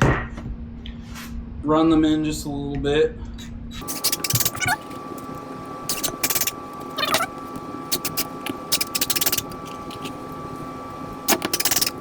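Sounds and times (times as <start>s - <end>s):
background hum: 3.1s - 12.0s
power driver driving screws: 11.3s - 12.0s.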